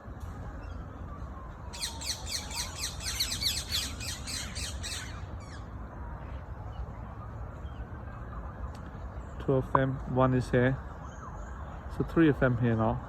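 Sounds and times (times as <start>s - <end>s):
parrots calling: 1.8s - 5.6s.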